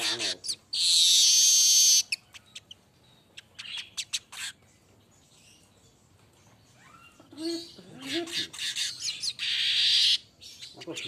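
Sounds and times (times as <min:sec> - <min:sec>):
faint high bird calls: 0:00.0 - 0:04.6, 0:06.4 - 0:11.0
bird chipping and clicking: 0:03.4 - 0:04.6.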